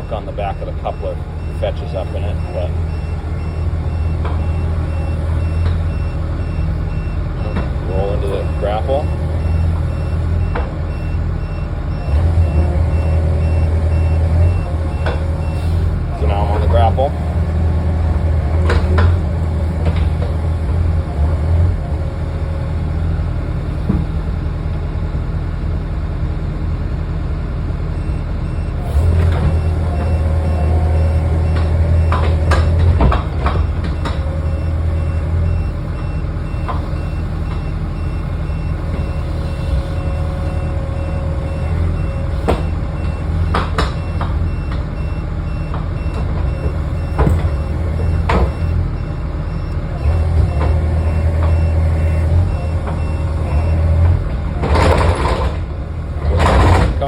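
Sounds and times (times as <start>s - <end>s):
hydraulic whine: 0.0s - 25.9s, 26.6s - 57.0s
excavator diesel engine: 0.0s - 57.0s
metal clunks: 4.1s - 4.6s, 14.8s - 21.0s, 31.4s - 34.4s, 42.3s - 44.9s, 45.7s - 48.8s.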